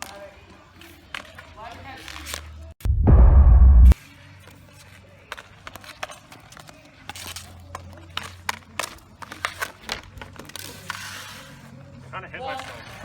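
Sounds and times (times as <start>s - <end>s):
hockey stick and puck taps: 0.8s - 2.5s, 5.3s - 11.4s
low steady hum: 2.9s - 4.0s.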